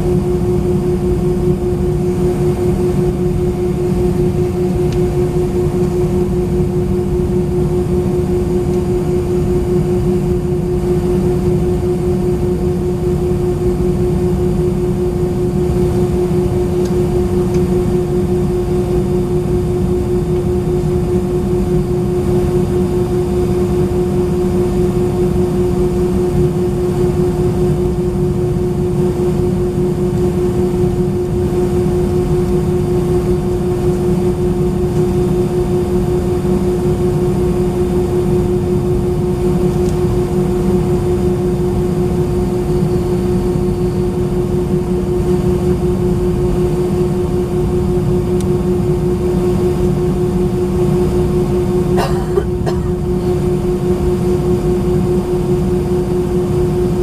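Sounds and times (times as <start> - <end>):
jet engine cabin rumble: 0.0 - 57.0.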